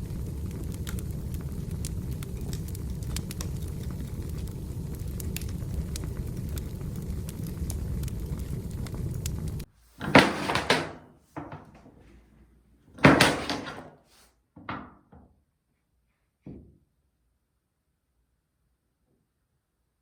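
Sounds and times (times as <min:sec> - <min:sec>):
fire crackling: 0:00.0 - 0:10.9, 0:13.0 - 0:13.9.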